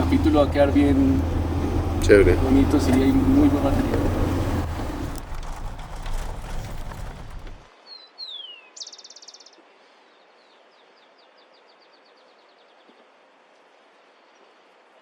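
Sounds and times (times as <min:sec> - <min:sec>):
faint outdoor background: 0:00.0 - 0:15.0
small bird singing: 0:07.9 - 0:12.6.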